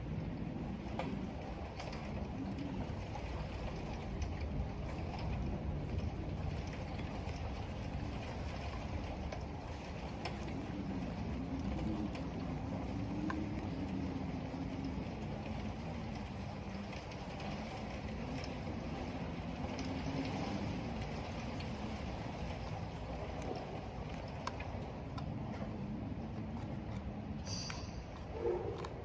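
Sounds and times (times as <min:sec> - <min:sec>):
low howl of wind: 0:00.0 - 0:29.0
wind and rain rushing: 0:00.0 - 0:29.0.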